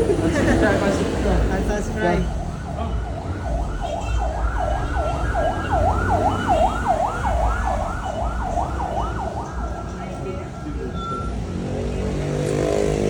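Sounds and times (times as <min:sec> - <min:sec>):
low traffic rumble: 0:00.0 - 0:13.0
siren yelping: 0:01.6 - 0:11.4.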